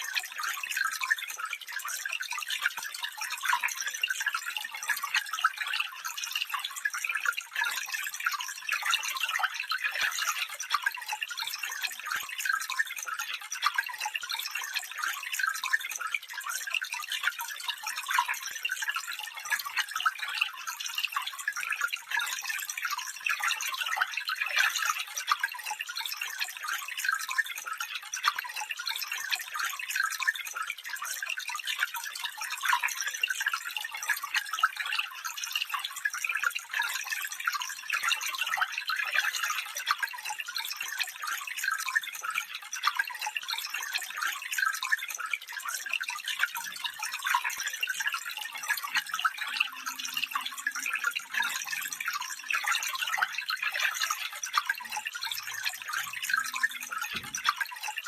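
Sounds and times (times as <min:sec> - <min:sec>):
stream trickling over stones: 0:00.0 - 0:58.0.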